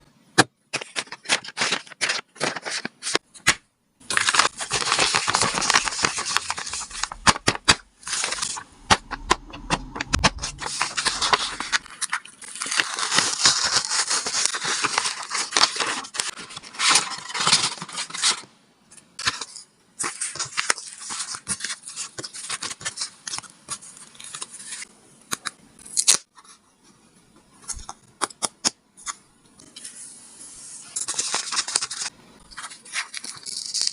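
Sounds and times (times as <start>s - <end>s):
paper crinkling and rustling: 1.0s - 3.2s, 4.1s - 7.6s, 31.1s - 33.9s.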